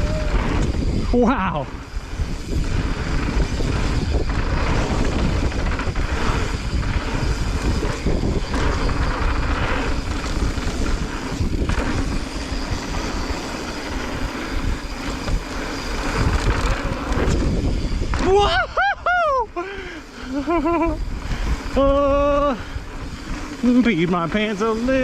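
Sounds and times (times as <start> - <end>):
bike tyres rumbling on dirt: 0.0 - 25.0
wind rushing over microphone: 0.0 - 25.0.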